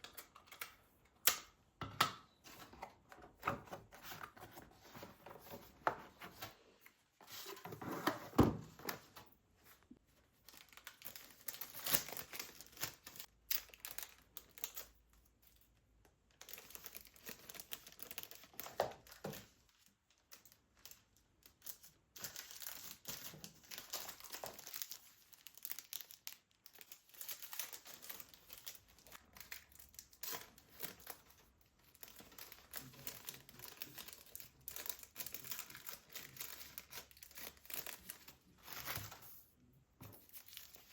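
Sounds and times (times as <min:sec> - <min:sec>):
packaging crinkling and tearing: 0:10.4 - 0:15.2, 0:16.4 - 0:39.4, 0:40.2 - 0:40.9.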